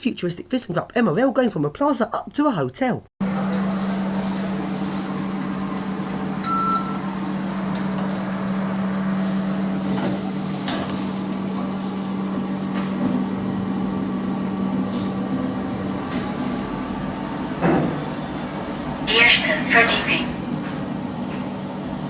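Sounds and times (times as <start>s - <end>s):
short electronic beep: 6.4s - 7.0s.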